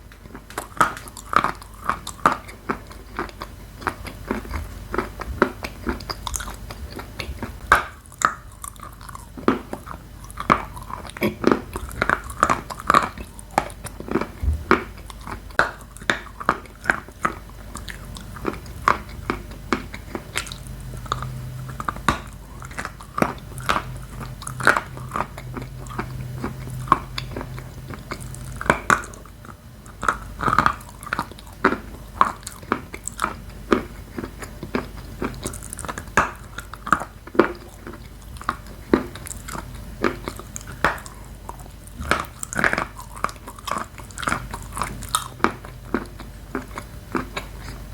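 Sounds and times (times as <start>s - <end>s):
person chewing crunchy chalk: 0.0s - 47.9s.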